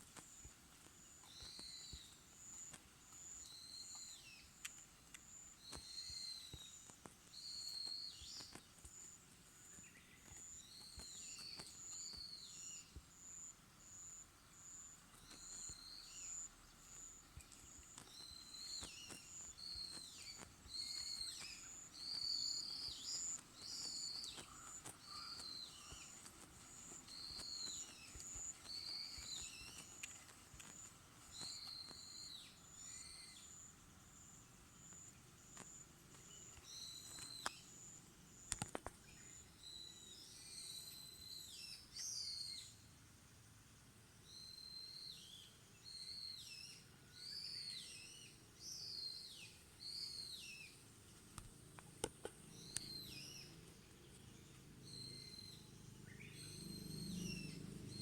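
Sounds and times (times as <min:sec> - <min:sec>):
birds calling: 0:09.7 - 0:33.7, 0:52.0 - 0:58.0.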